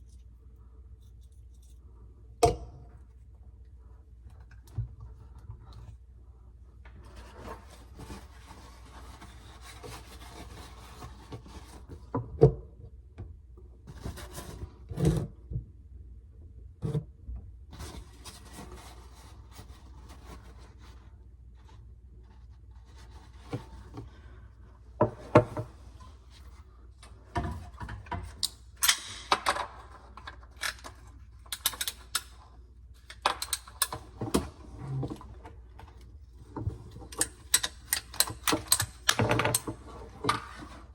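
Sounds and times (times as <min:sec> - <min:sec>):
tools on plastic pipe fittings: 0:27.0 - 0:35.0, 0:36.6 - 0:40.9.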